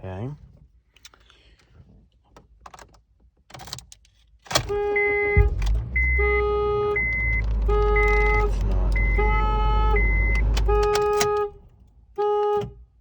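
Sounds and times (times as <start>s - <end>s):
low engine rumble: 4.6s - 12.2s
car horn blasts: 4.6s - 13.0s
high steady beep: 4.7s - 11.4s.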